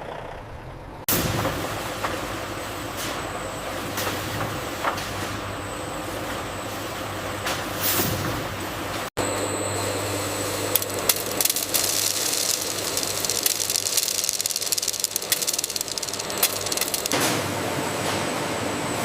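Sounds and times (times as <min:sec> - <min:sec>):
machinery humming and rattling: 0:09.2 - 0:17.6.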